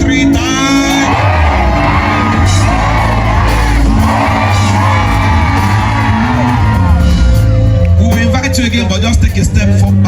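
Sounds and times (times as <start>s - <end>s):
bass line: 0.0s - 10.0s
live church band music: 0.0s - 10.0s
congregation shouting and cheering: 0.3s - 7.9s.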